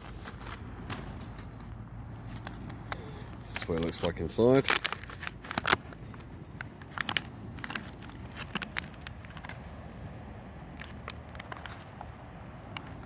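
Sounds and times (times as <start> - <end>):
wrapper crinkling: 0.0 - 9.6.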